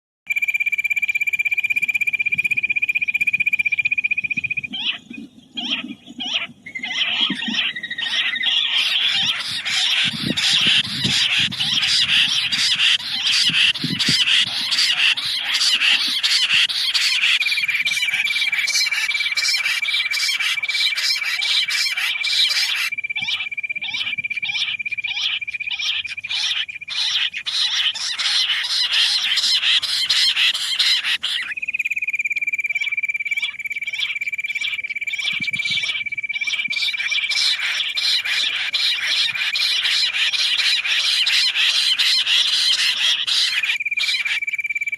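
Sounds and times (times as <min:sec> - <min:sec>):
steady high whistle tone: 0:00.3 - 0:04.8, 0:22.2 - 0:26.9, 0:31.5 - 0:37.3, 0:43.6 - 0:44.9
quail chirping: 0:00.7 - 0:44.9.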